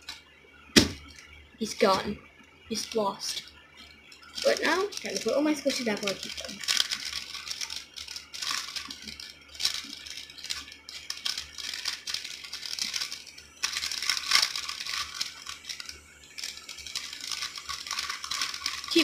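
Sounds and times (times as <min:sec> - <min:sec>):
plastic packaging rustling: 0:03.3 - 0:19.0
toys clattering into container: 0:04.2 - 0:19.0.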